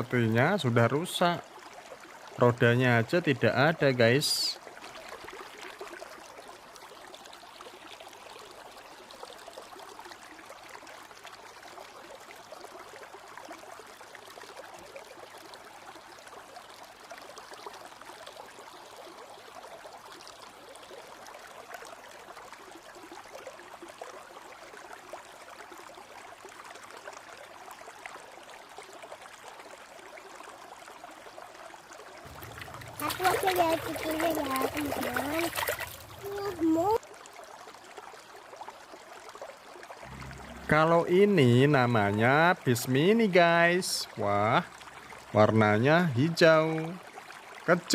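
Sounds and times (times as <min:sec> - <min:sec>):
stream trickling: 0:00.0 - 0:47.9.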